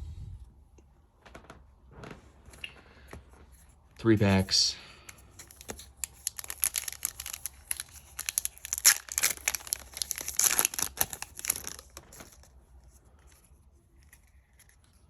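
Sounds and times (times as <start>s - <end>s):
foil wrapper crinkling and tearing: 5.2s - 12.6s.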